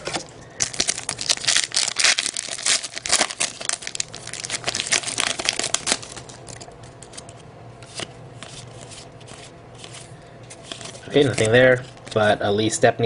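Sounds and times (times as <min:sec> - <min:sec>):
plastic wrapper crinkling: 0:00.6 - 0:07.2, 0:10.6 - 0:12.2.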